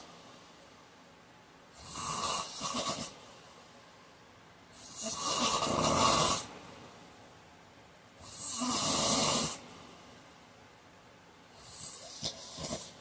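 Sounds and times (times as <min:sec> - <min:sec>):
man snoring: 0:01.8 - 0:03.2, 0:04.8 - 0:06.5, 0:08.3 - 0:09.6, 0:11.7 - 0:13.0.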